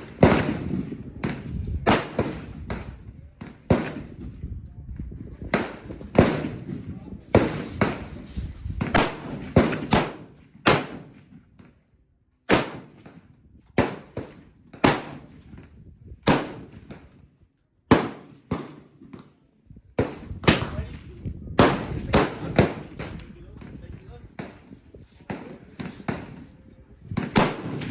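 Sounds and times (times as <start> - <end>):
gunshots with echo: 0.0 - 2.9, 8.9 - 11.2, 13.8 - 15.3, 16.2 - 16.9, 21.6 - 23.2, 27.2 - 27.9.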